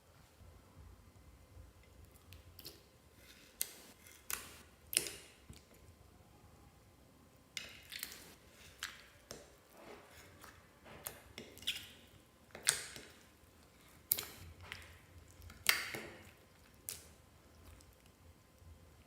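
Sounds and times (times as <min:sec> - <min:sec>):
wet slime squelching: 0:07.6 - 0:18.2.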